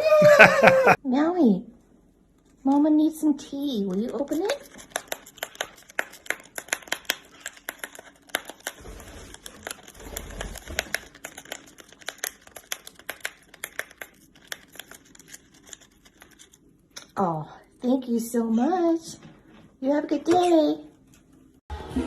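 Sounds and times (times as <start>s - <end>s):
paper crinkling and ripping: 4.1s - 16.6s.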